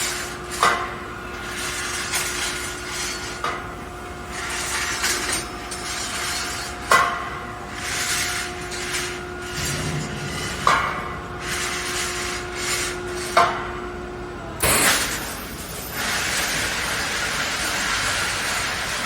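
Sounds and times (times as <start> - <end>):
steady machine hum: 8.4 - 13.3.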